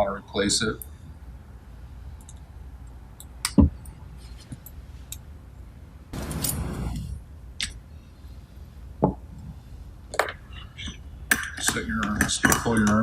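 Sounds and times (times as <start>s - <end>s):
small steel parts clicking and clinking: 2.2s - 5.3s, 6.2s - 6.7s, 10.1s - 13.0s.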